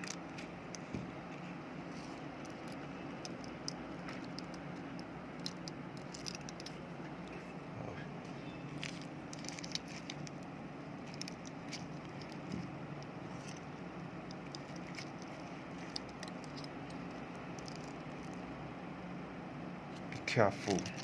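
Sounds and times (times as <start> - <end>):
low background hum: 0.0 - 21.0
battery pouch clicks and crinkles: 2.5 - 6.8, 8.8 - 12.6, 14.3 - 18.4.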